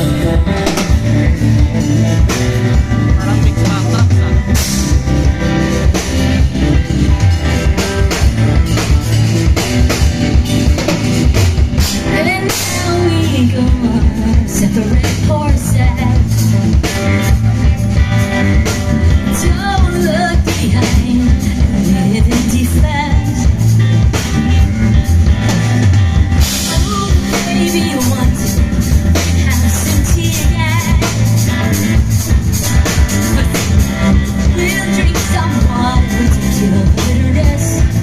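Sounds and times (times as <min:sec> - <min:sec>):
live rock band: 0:00.0 - 0:38.0
woman singing: 0:12.0 - 0:17.4, 0:19.1 - 0:23.8, 0:26.4 - 0:31.7, 0:33.2 - 0:38.0.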